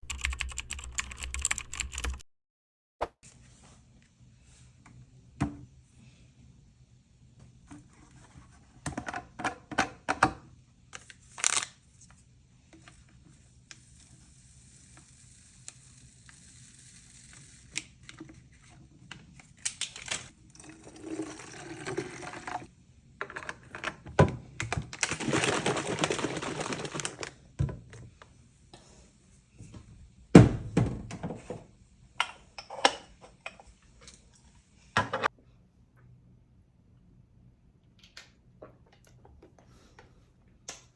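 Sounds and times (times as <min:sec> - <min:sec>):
liquid pouring or stirring: 0:20.3 - 0:22.7.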